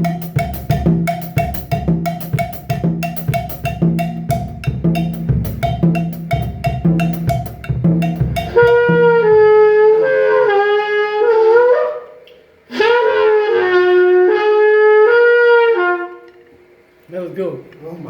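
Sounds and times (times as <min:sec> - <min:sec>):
steady drum beat: 0:00.0 - 0:09.6
horn-like wind instrument: 0:08.4 - 0:16.4.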